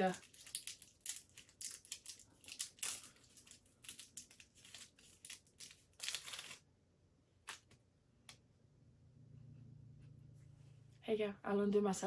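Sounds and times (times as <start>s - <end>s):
plastic wrapper crinkling and tearing: 0.0s - 6.6s.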